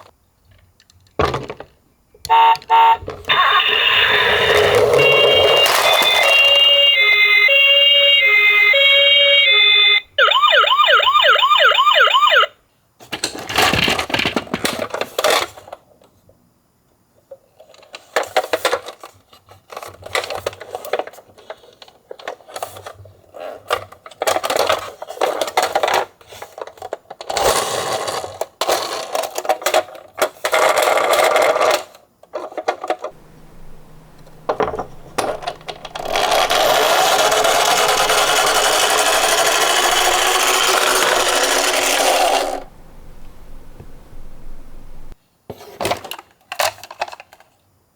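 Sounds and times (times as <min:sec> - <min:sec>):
toy siren: 0:02.2 - 0:12.6, 0:33.4 - 0:43.2
toy rattling and rolling: 0:34.3 - 0:42.8.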